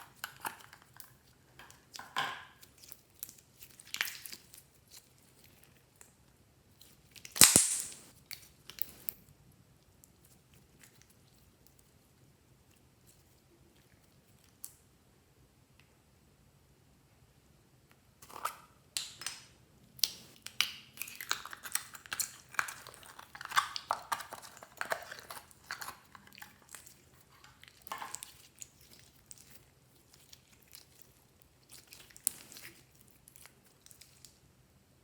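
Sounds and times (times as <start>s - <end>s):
slime squished by hand: 6.8s - 9.2s, 20.0s - 34.3s.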